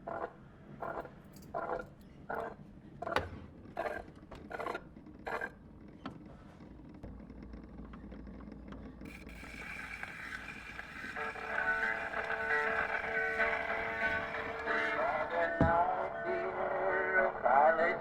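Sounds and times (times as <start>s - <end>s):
gramophone running hum: 1.8s - 18.0s
music from record: 11.1s - 17.4s.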